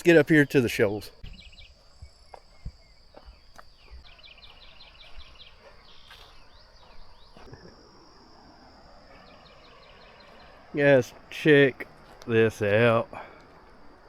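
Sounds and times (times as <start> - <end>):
bird chirps: 0.0 - 12.2
soft footsteps on trail: 1.1 - 7.8, 11.2 - 14.0.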